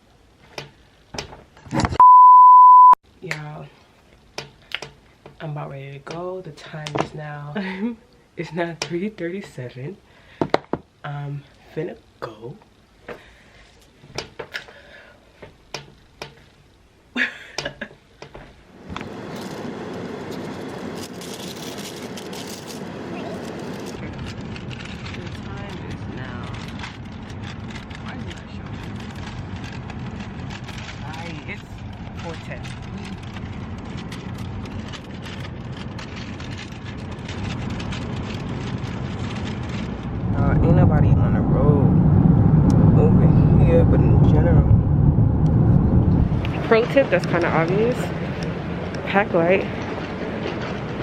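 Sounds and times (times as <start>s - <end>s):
car driving rushing noise: 18.8s - 49.1s
fast irregular clicks: 23.4s - 40.4s.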